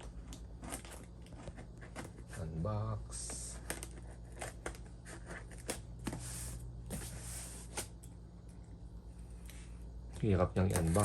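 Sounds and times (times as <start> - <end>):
cardboard scraping and rustling: 3.4 - 7.9.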